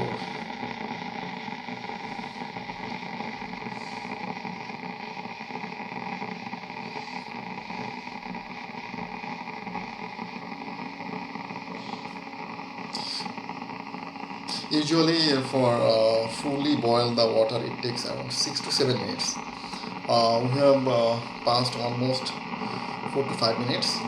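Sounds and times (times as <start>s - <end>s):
kettle heating water: 0.0s - 24.0s.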